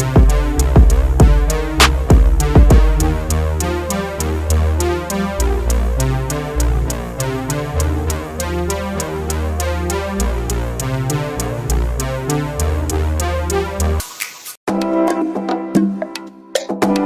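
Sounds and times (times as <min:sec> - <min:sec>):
drum machine beat: 0:00.0 - 0:03.4
deep bass line: 0:00.0 - 0:14.0
synthesizer melody: 0:00.0 - 0:14.0.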